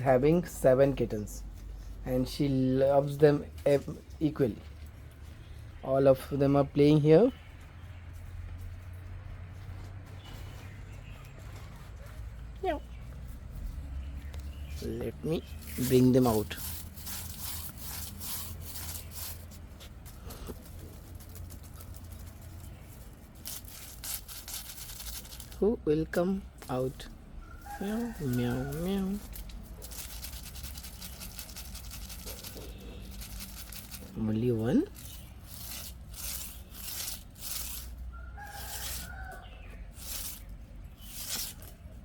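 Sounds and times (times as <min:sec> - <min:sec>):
soft rustling and scuffling: 0:00.7 - 0:30.5.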